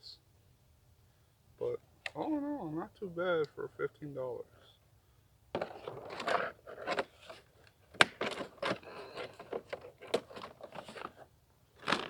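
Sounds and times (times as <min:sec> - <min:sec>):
handling rustling and scraping: 0:05.6 - 0:12.0.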